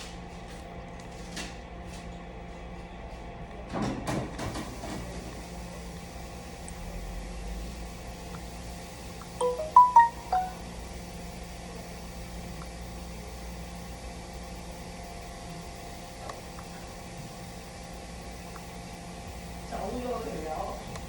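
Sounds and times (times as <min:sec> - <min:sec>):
electronic chime: 0:09.4 - 0:10.6.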